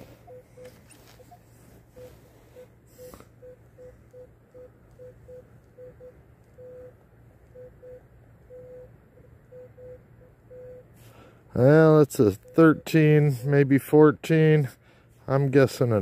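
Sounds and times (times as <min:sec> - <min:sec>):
metal detector beeps: 0:00.0 - 0:08.9, 0:09.5 - 0:10.9, 0:11.6 - 0:13.9.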